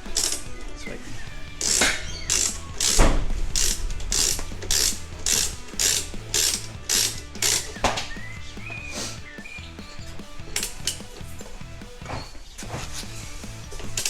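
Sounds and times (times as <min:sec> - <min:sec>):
ratchet wrench pawl clicking: 0:00.2 - 0:00.4, 0:01.6 - 0:07.8, 0:10.6 - 0:11.2, 0:13.7 - 0:14.0.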